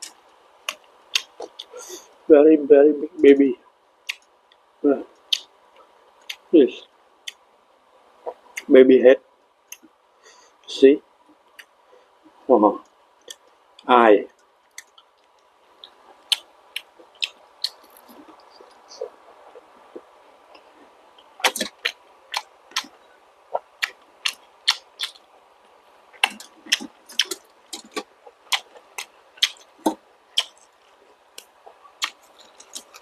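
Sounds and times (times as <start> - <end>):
wet chewing clicks and smacks: 0.0 - 1.8, 14.4 - 22.9, 23.5 - 25.2, 26.1 - 33.0.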